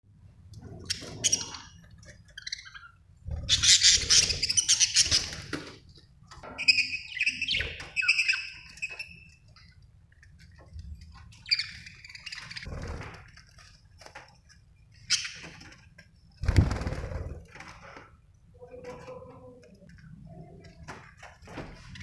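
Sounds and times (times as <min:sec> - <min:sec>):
budgerigars chirping and chattering: 0:02.4 - 0:05.4, 0:06.7 - 0:09.2.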